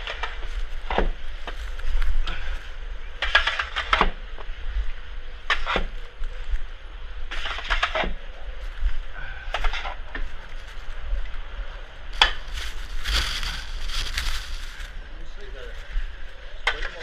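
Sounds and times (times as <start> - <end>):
wind buffeting microphone: 4.0 - 16.7
crunching scrapes in snow: 12.1 - 16.0.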